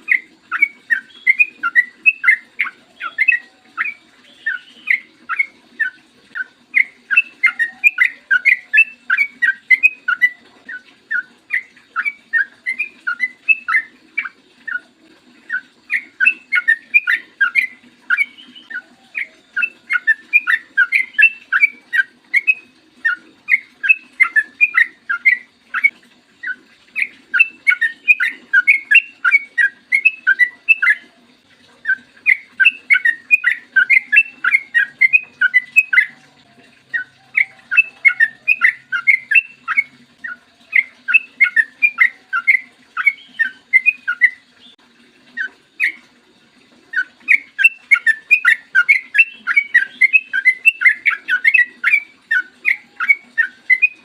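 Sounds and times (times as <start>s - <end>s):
bulbul singing bubbling notes: 15.5s - 31.0s, 31.8s - 46.0s.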